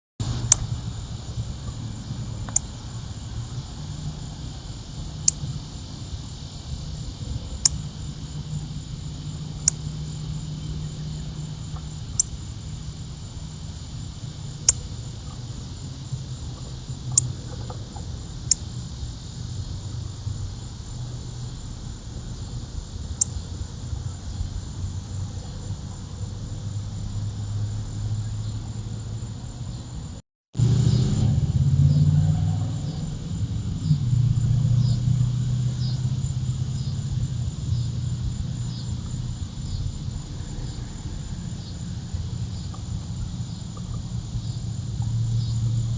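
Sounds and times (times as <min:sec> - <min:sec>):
crickets chirping: 0:00.2 - 0:45.9
low rumble: 0:30.6 - 0:45.9.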